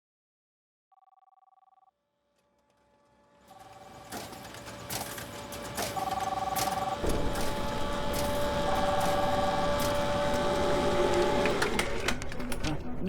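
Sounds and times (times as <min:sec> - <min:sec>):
electronic phone ringing: 0:00.9 - 0:02.0, 0:05.9 - 0:07.0.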